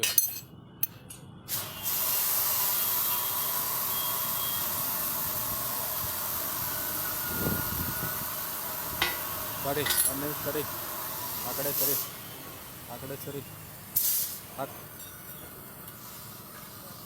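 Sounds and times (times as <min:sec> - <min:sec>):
pressurised gas jet hissing: 0:04.7 - 0:13.3.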